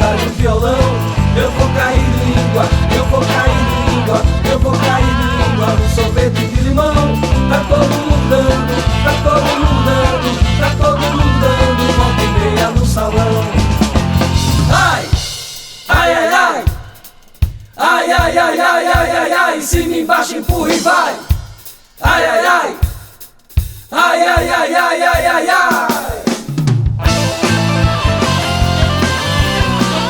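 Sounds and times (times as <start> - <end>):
vibrato melodic lead line: 0.0 - 15.2, 27.0 - 30.0
band music: 0.0 - 17.1, 24.0 - 30.0
drum kit hits: 0.0 - 18.4, 25.2 - 30.0.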